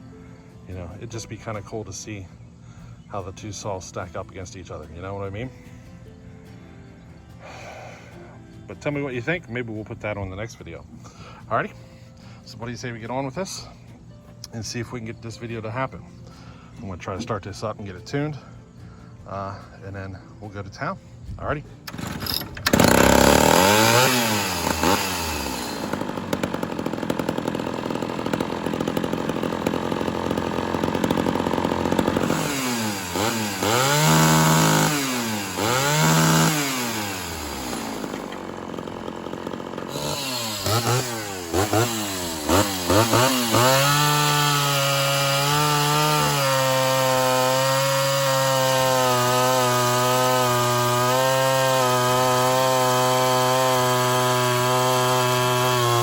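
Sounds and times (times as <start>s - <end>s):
chainsaw revving and idling: 7.3s - 9.7s, 21.8s - 56.0s.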